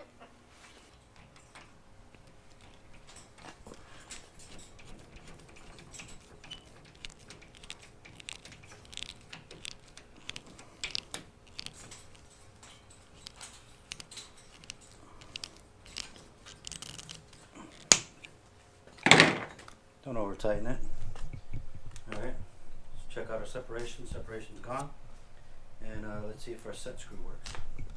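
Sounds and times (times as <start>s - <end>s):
screwdriver clicking and scraping metal: 1.1s - 18.4s.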